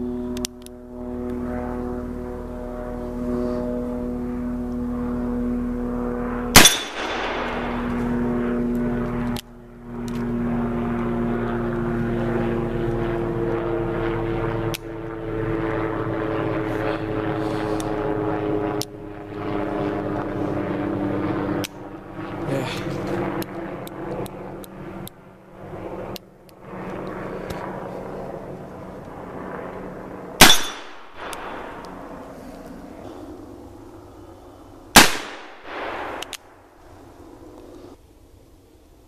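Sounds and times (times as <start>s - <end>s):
engine drone: 0.0s - 39.0s
revolver shot: 6.6s - 7.8s.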